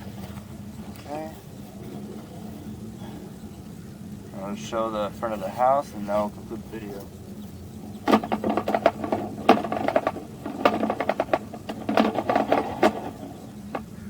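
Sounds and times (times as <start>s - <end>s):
equipment clicking and knocking: 8.0s - 14.0s.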